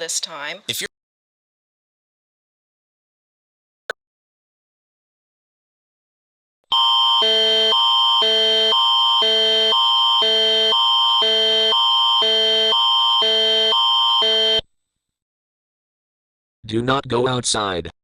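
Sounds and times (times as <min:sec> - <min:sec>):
alternating two-tone alert signal: 0:06.7 - 0:14.6
steady high tone: 0:06.7 - 0:14.6.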